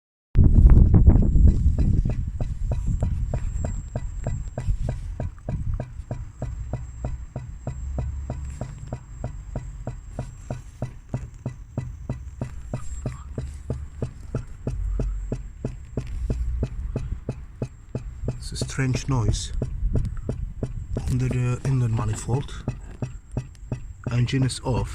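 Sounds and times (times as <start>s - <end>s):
rapid engine ticking: 0.5s - 24.9s
diesel engine running: 0.6s - 24.9s.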